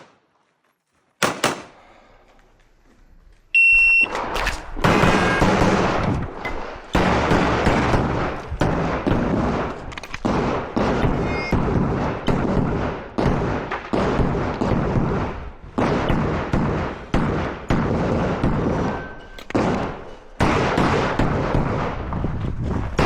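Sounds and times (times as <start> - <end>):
pistol shots with echo: 1.2 - 1.8, 4.8 - 22.0.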